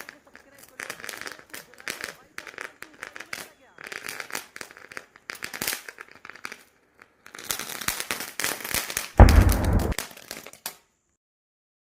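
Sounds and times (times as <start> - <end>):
firecracker crackling and popping: 0.0 - 11.0
deep firecracker burst: 9.2 - 10.0.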